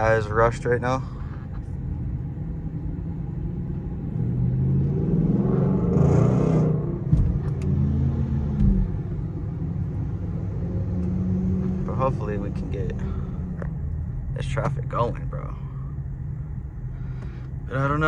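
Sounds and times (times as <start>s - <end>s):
car engine and road rumble: 0.0s - 18.0s.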